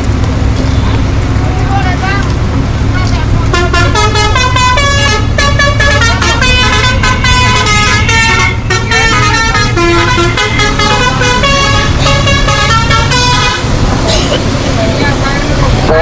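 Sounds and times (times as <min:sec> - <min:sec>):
low drone of moving bus: 0:00.0 - 0:16.0
bus musical horn tune: 0:03.0 - 0:14.6.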